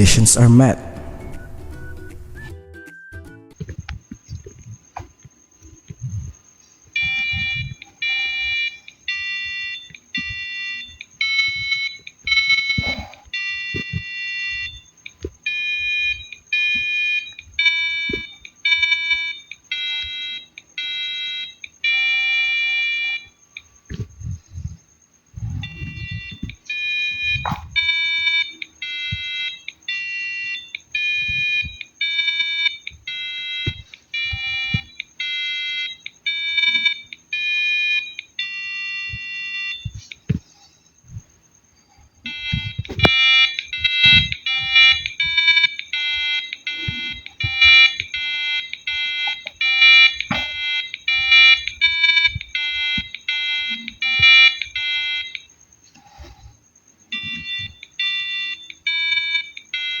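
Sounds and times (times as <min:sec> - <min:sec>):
piezo buzzer playing melody: 0:07.0 - 0:14.9, 0:15.5 - 0:23.4, 0:25.6 - 0:40.0, 0:42.3 - 0:55.5, 0:57.1 - 1:00.0.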